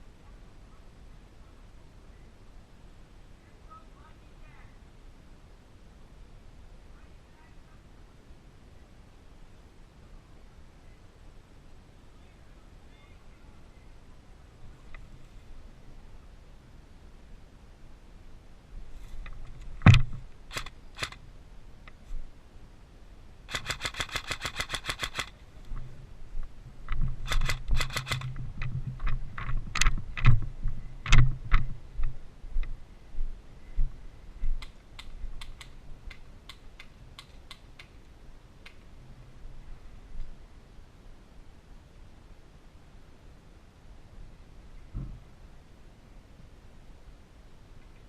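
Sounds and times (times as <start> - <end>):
airsoft guns firing: 19.9 - 21.2, 23.5 - 25.3, 27.3 - 28.3.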